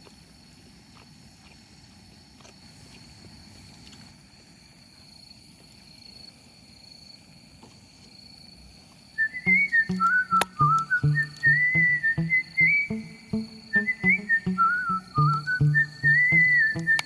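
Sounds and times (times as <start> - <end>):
whistled melody over a beat: 9.2 - 17.0
thin steady high tone: 9.4 - 17.0.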